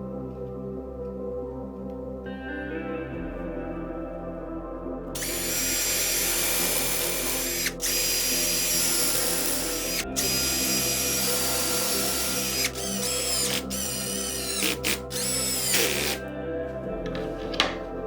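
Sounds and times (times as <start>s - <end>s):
power tool motor running: 5.2s - 16.2s.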